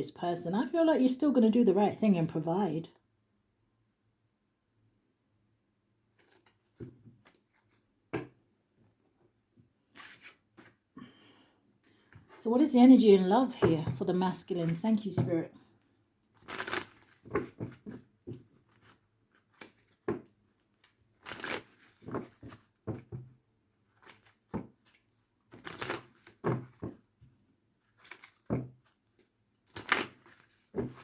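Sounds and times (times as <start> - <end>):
cards being shuffled: 6.2 - 7.9, 9.9 - 10.8, 16.3 - 23.2, 24.0 - 27.0, 27.9 - 31.0.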